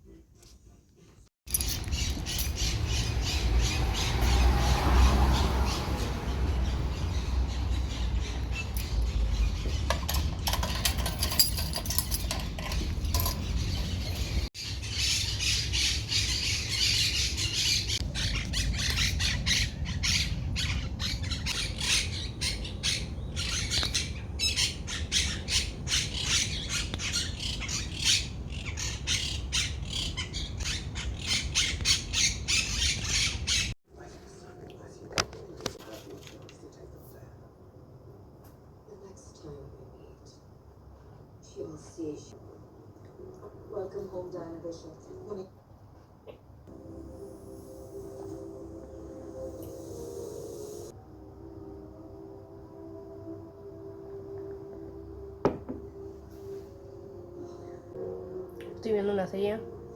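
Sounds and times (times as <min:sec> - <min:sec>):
birds squawking and chattering: 0:01.7 - 0:33.8.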